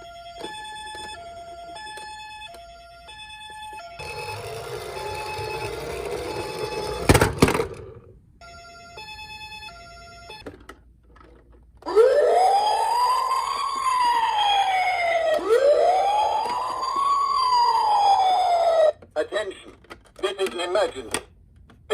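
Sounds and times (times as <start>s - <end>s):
two-tone toy ambulance siren: 0.0s - 7.3s, 8.4s - 10.6s, 11.8s - 19.0s
wail siren: 11.8s - 19.0s.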